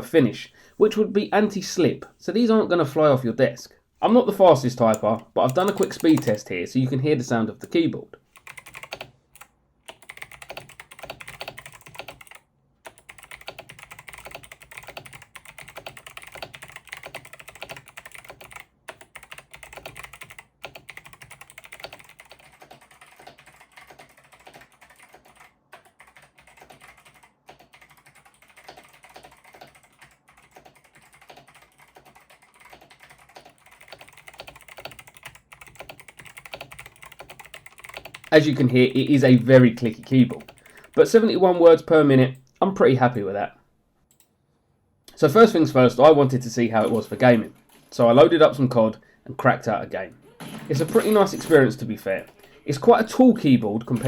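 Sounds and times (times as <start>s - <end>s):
clicky mechanical keyboard typing: 4.9s - 6.5s, 8.4s - 38.7s, 40.0s - 41.1s.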